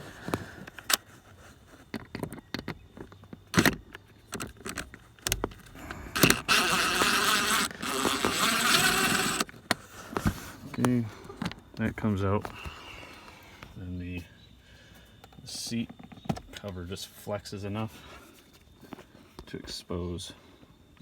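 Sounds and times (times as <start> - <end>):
cordless drill whirring: 5.3 - 9.7.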